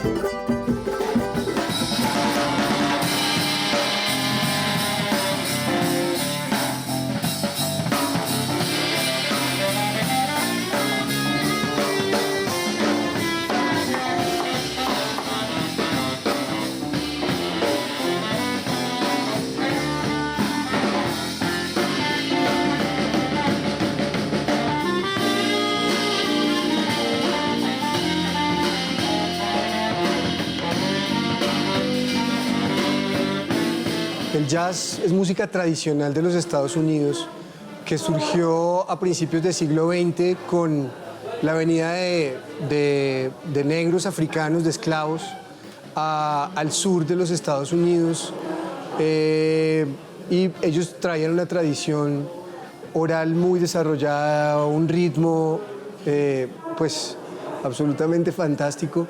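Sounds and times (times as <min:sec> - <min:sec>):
jazz band music: 0:00.0 - 0:34.5.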